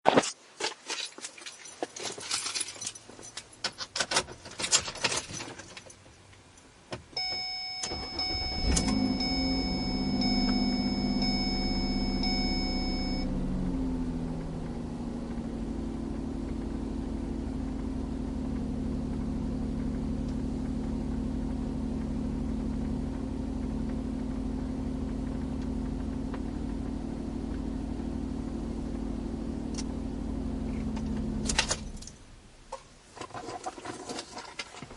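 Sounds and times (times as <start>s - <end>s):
car keys jangling: 0.9s - 6.2s, 31.4s - 32.2s
car engine cranking and starting: 7.1s - 34.2s
steady electronic dashboard tone: 7.2s - 32.6s
car engine idling: 7.2s - 33.1s.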